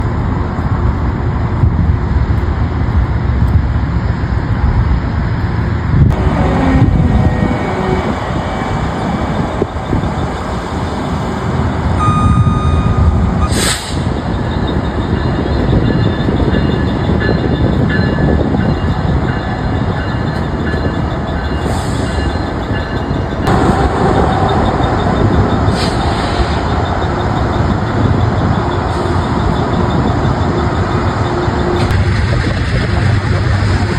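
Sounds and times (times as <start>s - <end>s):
heavy train rumble: 0.0s - 33.9s
brief steady tone: 12.0s - 16.8s
air brakes hissing: 13.3s - 14.2s, 25.6s - 26.8s.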